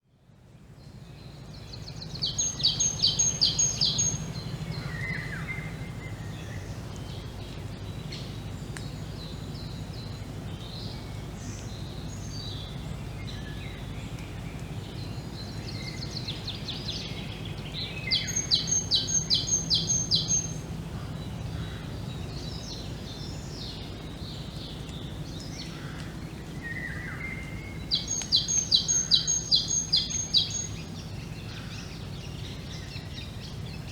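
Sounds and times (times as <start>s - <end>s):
steady low hum: 0.2s - 33.9s
birds singing: 0.6s - 33.9s.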